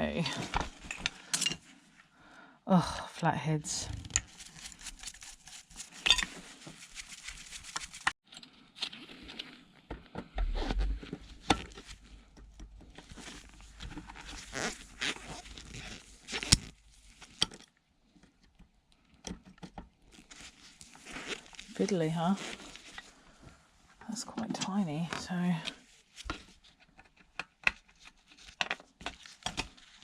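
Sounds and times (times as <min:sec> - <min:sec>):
low bump: 0:10.4 - 0:11.2.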